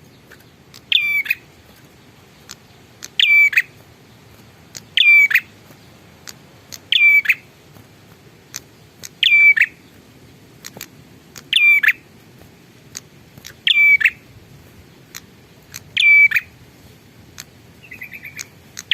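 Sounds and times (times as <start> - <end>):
bird chirping phrase: 0.0 - 5.5, 6.8 - 7.5, 9.2 - 10.0, 13.5 - 14.2, 17.8 - 18.9
faint sharp ticks: 1.7 - 3.2, 4.3 - 5.0, 5.7 - 6.9, 7.8 - 9.2, 10.6 - 11.5, 15.1 - 16.0, 17.3 - 18.9.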